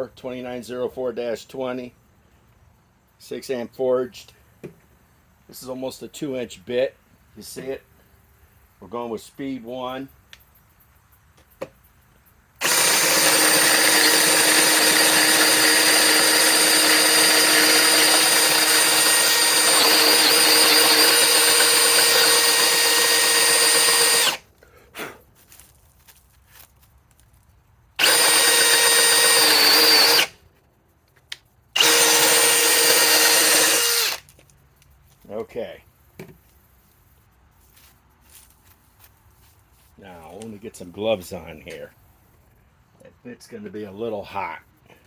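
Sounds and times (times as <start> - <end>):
hammer drill running: 12.6 - 24.4, 28.0 - 30.3, 31.8 - 34.2.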